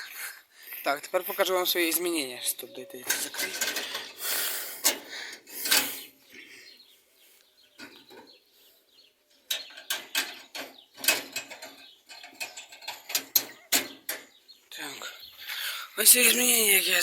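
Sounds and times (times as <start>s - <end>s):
wire cage door clicks and rattles: 3.0s - 4.2s, 4.8s - 6.0s, 9.5s - 14.4s.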